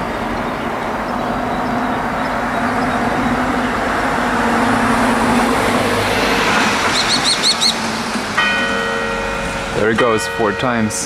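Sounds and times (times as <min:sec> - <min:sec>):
small bird chirping: 0:00.0 - 0:03.9, 0:06.8 - 0:07.9
vehicle passing: 0:00.0 - 0:11.0.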